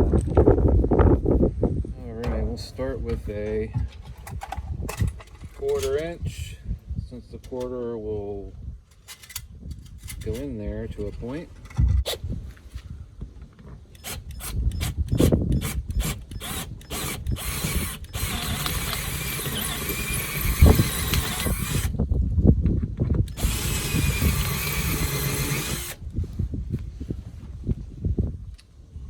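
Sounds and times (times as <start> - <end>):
knocking: 2.2 - 4.2
power drill drilling: 14.0 - 22.0, 23.3 - 26.0.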